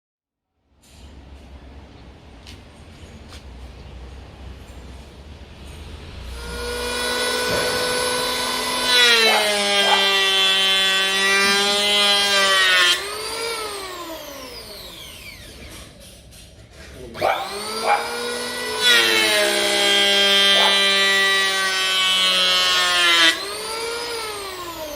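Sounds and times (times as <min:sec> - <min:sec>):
electric hand planer shaving wood: 0:06.3 - 0:15.8, 0:17.2 - 0:24.9.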